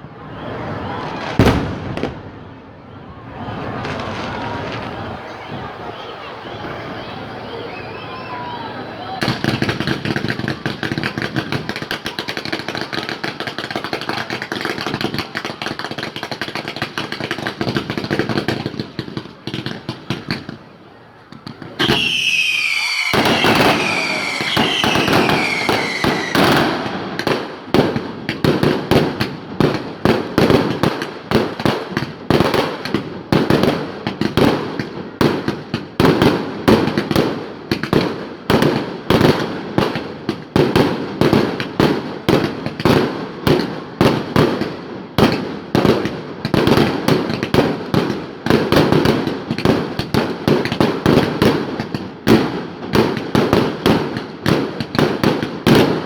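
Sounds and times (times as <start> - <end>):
fireworks bangs and crackling: 0.0 - 56.0
falling firework whistles: 0.2 - 2.7, 3.4 - 5.8, 21.8 - 27.4.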